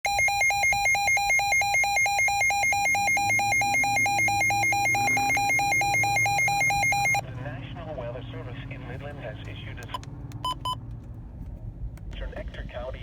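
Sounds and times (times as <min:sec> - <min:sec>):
electronic alert tone beeping: 0:00.0 - 0:07.2.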